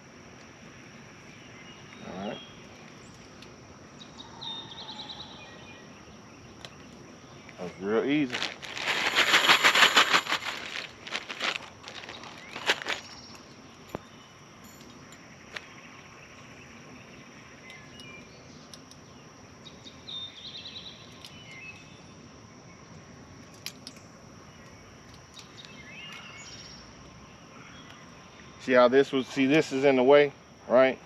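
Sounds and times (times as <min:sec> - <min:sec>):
birds chirping: 0:00.9 - 0:22.1.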